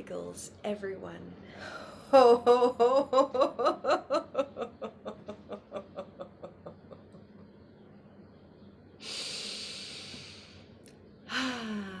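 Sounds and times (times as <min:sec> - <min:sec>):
long noisy breath: 0:01.4 - 0:02.1, 0:09.0 - 0:12.0
woman laughing: 0:02.1 - 0:07.2
breathy voiced sigh: 0:11.3 - 0:12.0.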